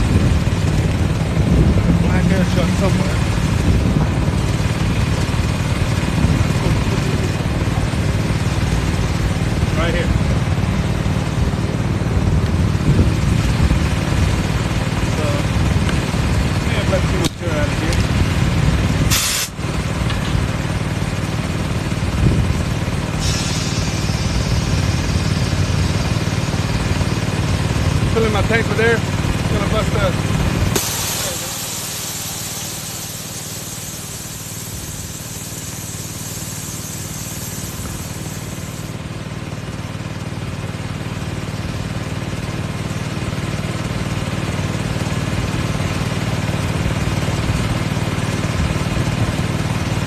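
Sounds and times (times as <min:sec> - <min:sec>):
air compressor running: 0:00.0 - 0:50.0
sharp hiss of air: 0:19.0 - 0:19.6, 0:23.0 - 0:27.4, 0:30.7 - 0:39.0
faint steady air hiss: 0:30.8 - 0:38.9.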